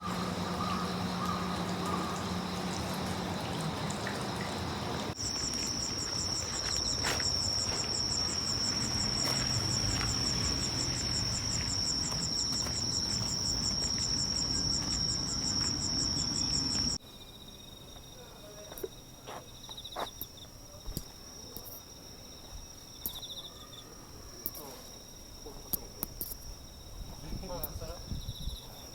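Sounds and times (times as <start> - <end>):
insects chirring: 0.0 - 28.9
insect pulsing trill: 5.2 - 17.0.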